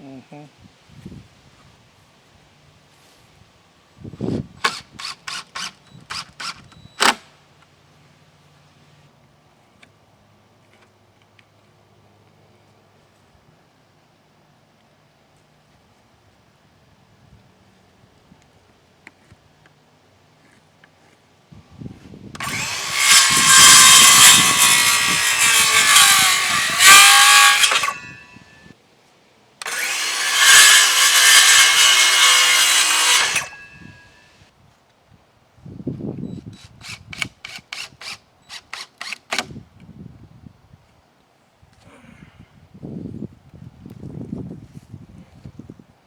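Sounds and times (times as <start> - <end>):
power saw cutting wood: 4.6 - 7.2, 22.4 - 28.5, 29.6 - 34.2, 36.6 - 39.5.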